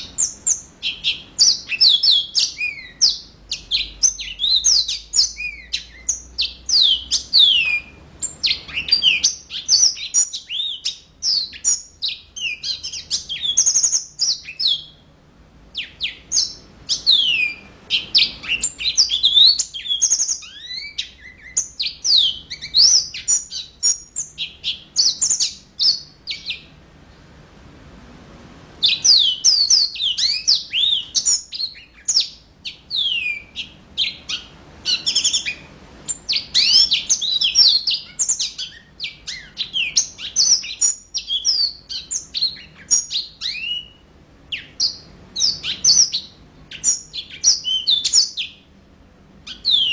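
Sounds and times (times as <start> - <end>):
canary singing chirps and trills: 0.0 - 27.7, 28.6 - 49.9.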